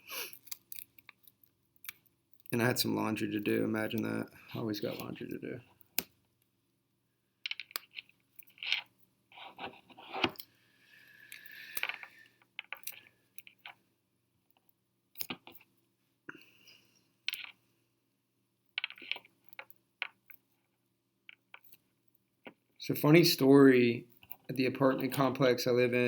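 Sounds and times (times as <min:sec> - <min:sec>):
scraping of small parts: 0:07.5 - 0:10.6, 0:11.2 - 0:13.8, 0:18.8 - 0:20.7.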